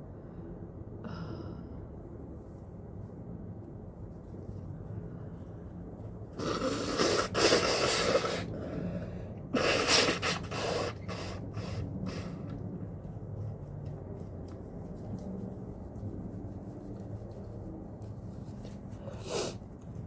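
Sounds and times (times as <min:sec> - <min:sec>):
person sneezing: 0:06.4 - 0:08.5
person sniffing: 0:06.4 - 0:09.0, 0:09.6 - 0:12.4, 0:19.0 - 0:19.6.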